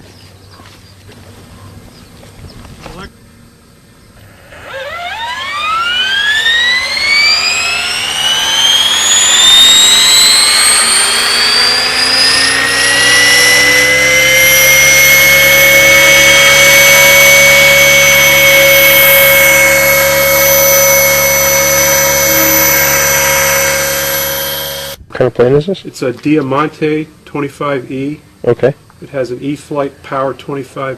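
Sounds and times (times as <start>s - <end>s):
rc helicopter whine: 3.0s - 25.0s.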